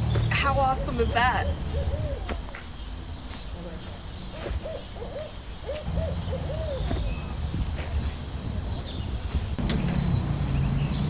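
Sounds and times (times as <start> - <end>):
crickets chirping: 0.0 - 11.0
short hooting calls: 0.6 - 8.2.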